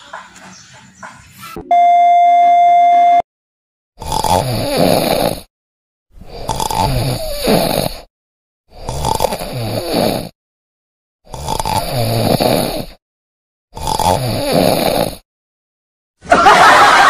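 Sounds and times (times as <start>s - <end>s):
man snoring loudly: 4.0s - 5.5s, 6.2s - 8.1s, 8.7s - 10.4s, 11.2s - 13.0s, 13.7s - 15.3s.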